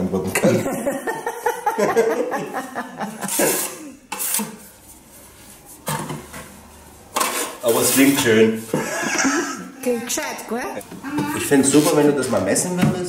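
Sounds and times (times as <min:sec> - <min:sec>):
person laughing: 0:00.5 - 0:04.0, 0:08.8 - 0:11.5.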